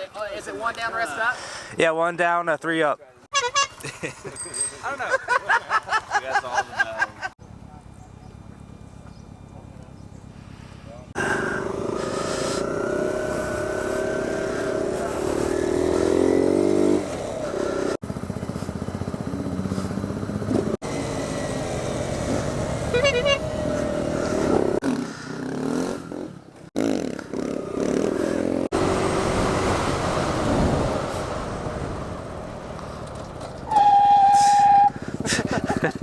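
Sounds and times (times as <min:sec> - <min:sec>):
motorcycle engine running: 0:07.4 - 0:25.7, 0:34.4 - 0:36.0.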